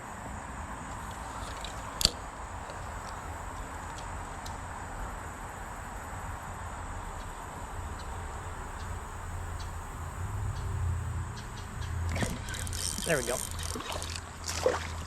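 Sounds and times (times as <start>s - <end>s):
creek water rushing: 12.1s - 15.0s.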